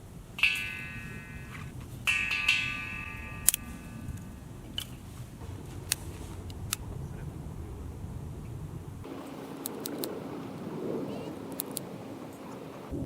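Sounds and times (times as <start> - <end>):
metallic clangs: 0.4 - 6.1
light clicks and taps: 11.5 - 12.6.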